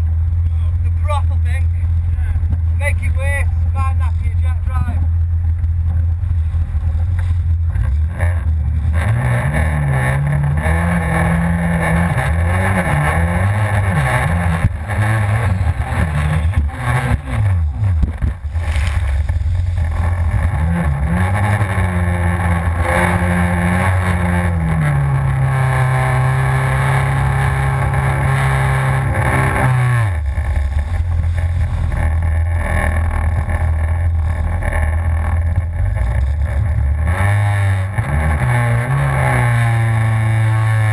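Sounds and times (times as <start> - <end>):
watercraft engine revving: 4.6 - 40.9.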